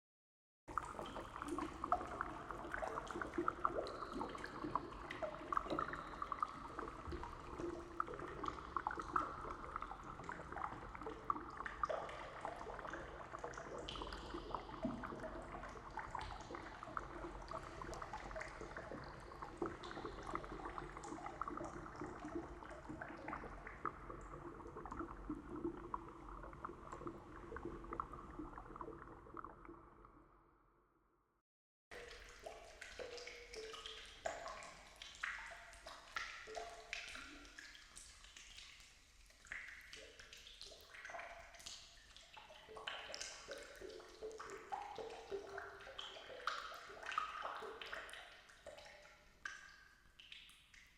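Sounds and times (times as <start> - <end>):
water drops dripping and plinking: 0.7 - 23.3, 31.9 - 38.7.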